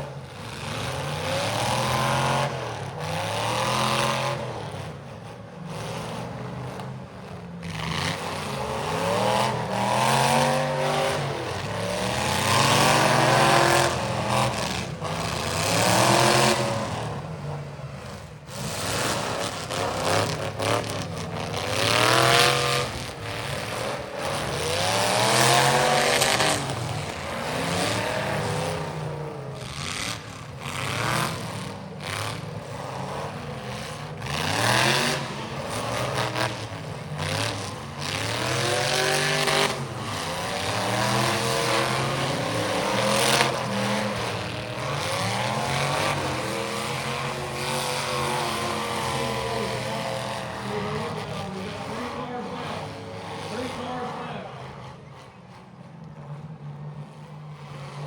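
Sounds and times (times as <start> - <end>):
car engines revving: 0.0 - 58.0.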